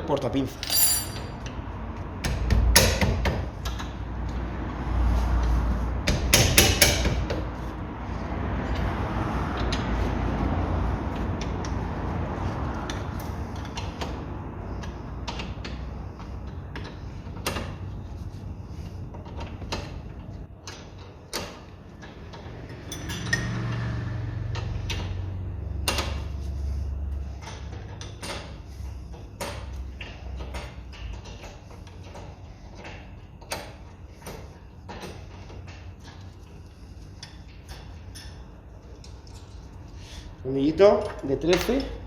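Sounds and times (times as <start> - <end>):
metal hand tools clinking: 0.5 - 1.5.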